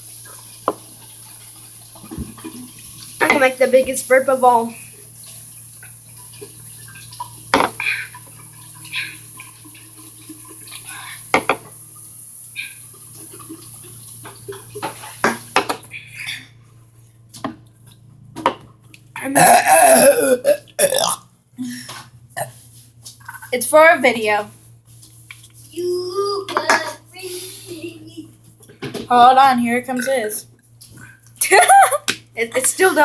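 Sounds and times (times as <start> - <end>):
long loud burp: 19.2 - 21.2.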